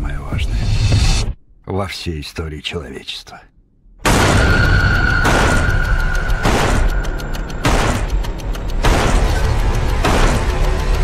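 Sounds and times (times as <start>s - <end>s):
dramatic trailer music: 4.0s - 11.0s.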